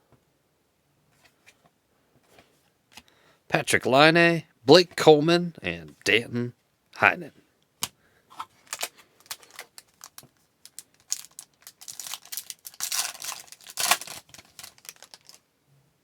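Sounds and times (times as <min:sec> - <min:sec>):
foil wrapper tearing and crinkling: 0:08.6 - 0:15.4.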